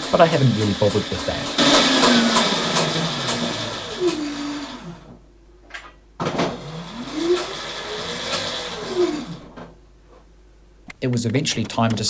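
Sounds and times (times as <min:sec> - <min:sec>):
electric motor whining: 0:00.0 - 0:05.2, 0:06.2 - 0:09.7.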